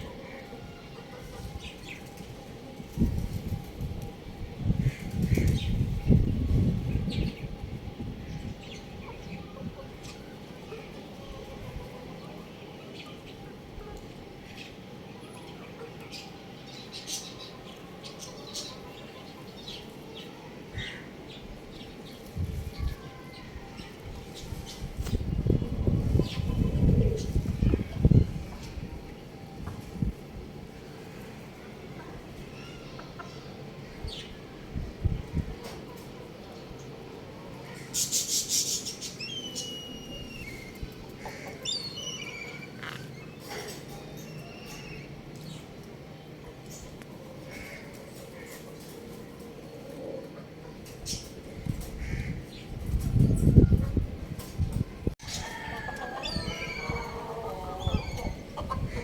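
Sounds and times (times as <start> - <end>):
high falling bird chirps and trill: 37.7 - 45.7
young rooster chirping: 55.2 - 59.0.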